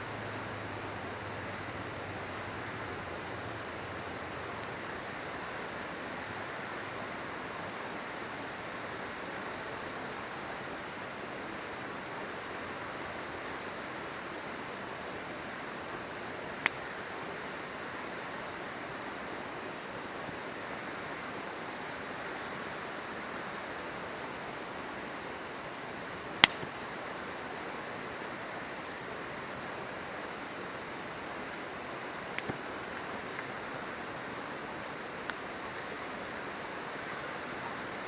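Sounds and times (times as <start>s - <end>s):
river flowing: 0.0s - 38.0s
campfire wood popping: 16.6s - 17.0s, 26.4s - 27.1s, 32.2s - 33.5s, 35.2s - 35.4s.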